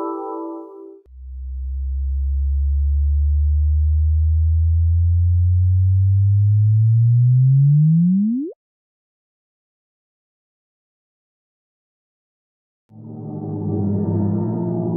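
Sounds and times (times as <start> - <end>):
low electronic tone rising: 2.4 - 8.6, 13.0 - 14.9.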